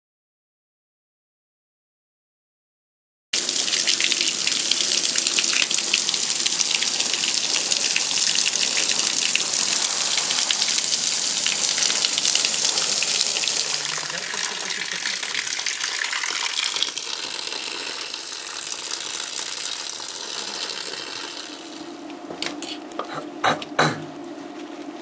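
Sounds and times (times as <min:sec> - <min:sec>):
water gushing: 0:03.4 - 0:22.0.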